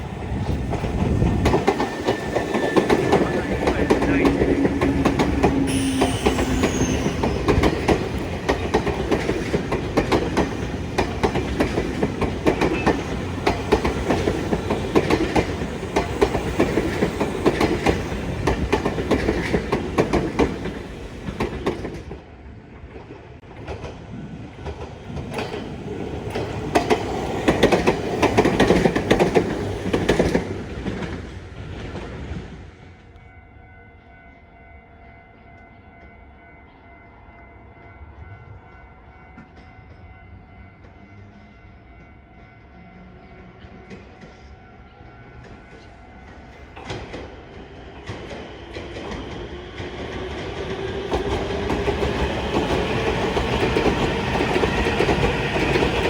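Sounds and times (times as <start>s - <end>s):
train wheels clattering over rail joints: 0.0s - 22.2s, 24.6s - 32.4s, 46.8s - 56.0s.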